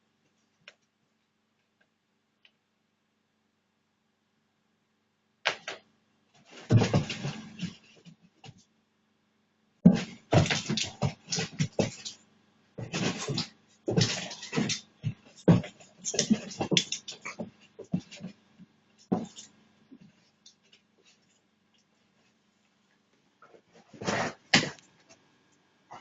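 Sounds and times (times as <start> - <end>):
faint steady hum: 0.0 - 26.0
scuffling and rustling: 6.4 - 8.6, 12.8 - 18.4.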